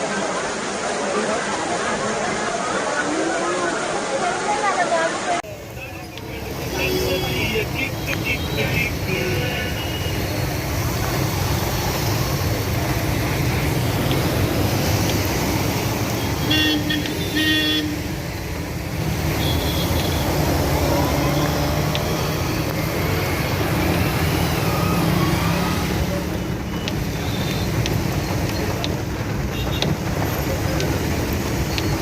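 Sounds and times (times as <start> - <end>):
traffic engines rumbling: 0.0 - 32.0
car horns honking: 6.4 - 10.3, 16.2 - 18.2.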